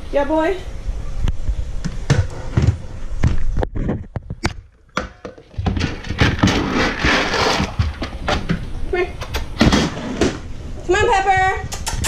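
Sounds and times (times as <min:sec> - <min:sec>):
sharp clicks: 0:09.2 - 0:09.6, 0:11.6 - 0:12.0.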